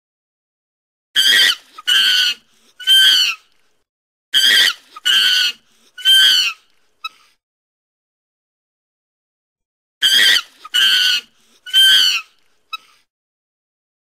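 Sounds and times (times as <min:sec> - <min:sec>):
chimpanzee screaming: 0:01.2 - 0:03.4, 0:04.4 - 0:06.6, 0:10.0 - 0:13.0.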